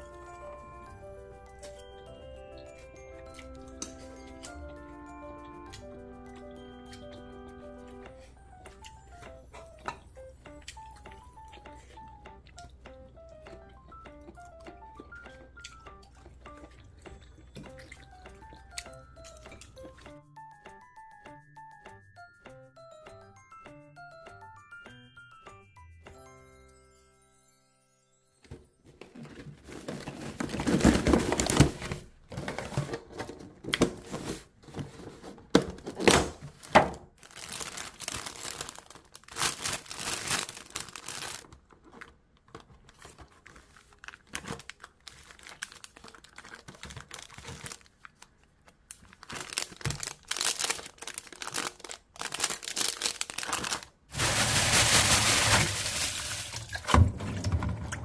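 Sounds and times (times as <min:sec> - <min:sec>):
packaging crinkling and tearing: 0:29.1 - 0:34.9, 0:35.5 - 0:57.1.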